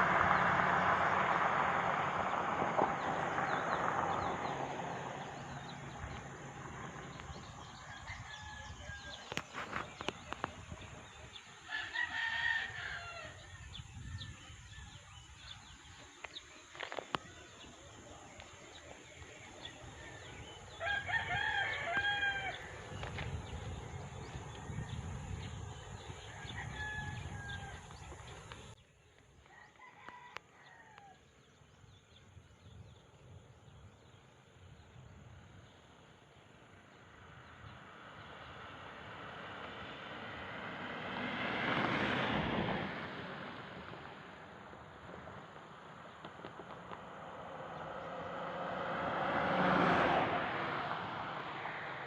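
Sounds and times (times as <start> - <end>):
vehicle passing by: 0.0 - 28.8, 36.7 - 52.0
rooster crowing: 7.6 - 9.7, 11.7 - 13.8, 20.7 - 22.8, 26.2 - 28.0, 29.5 - 31.2.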